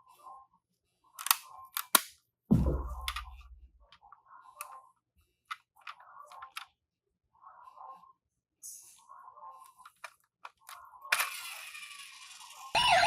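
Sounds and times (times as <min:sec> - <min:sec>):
heavy thump: 0:02.5 - 0:03.7
toy cars clicking and clattering: 0:09.6 - 0:12.8.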